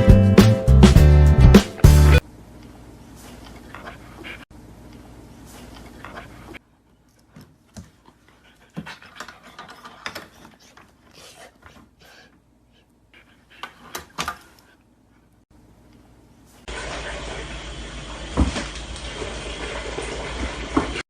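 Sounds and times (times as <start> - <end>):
dog panting: 3.6 - 4.5, 5.7 - 6.6, 8.1 - 14.8.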